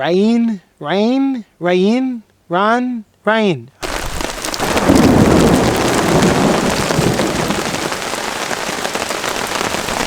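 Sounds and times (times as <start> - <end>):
heavy rain falling: 3.8 - 10.0.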